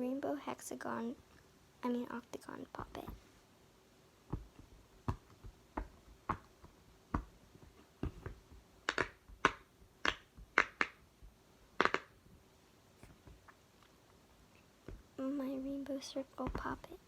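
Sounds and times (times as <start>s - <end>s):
pop-it toy bubbles popping: 8.0s - 11.0s, 11.8s - 12.1s.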